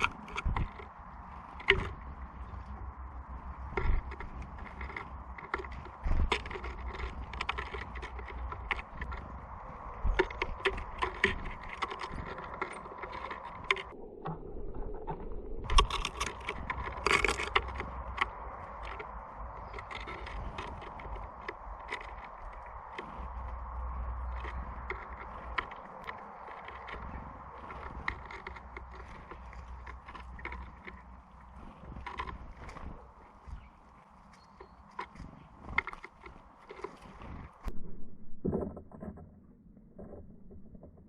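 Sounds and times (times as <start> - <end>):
birds pecking at a feeder: 0.0 - 14.0, 15.6 - 37.7.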